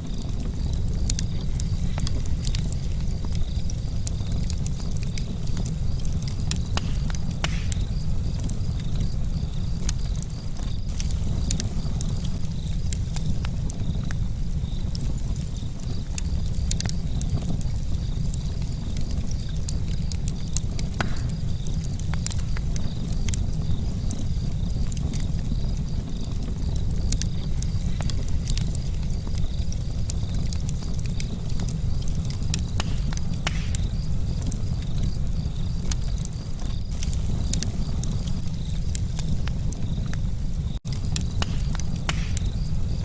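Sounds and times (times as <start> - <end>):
campfire crackling and popping: 0.0 - 43.0.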